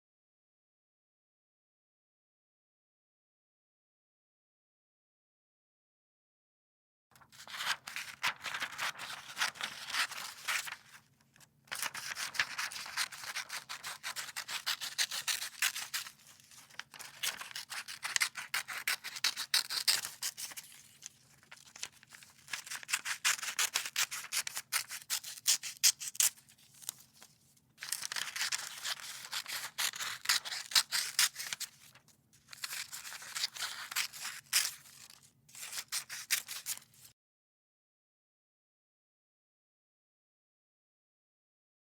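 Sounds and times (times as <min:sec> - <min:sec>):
scissors cutting paper: 0:11.7 - 0:27.0, 0:27.8 - 0:31.9, 0:32.5 - 0:37.0.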